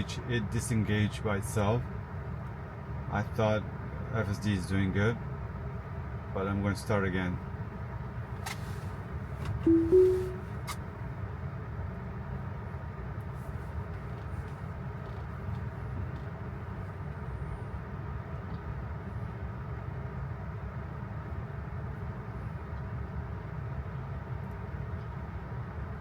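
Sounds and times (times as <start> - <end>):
road rumble inside car: 0.0 - 9.6, 10.3 - 26.0
two-note rising chime: 9.7 - 10.5.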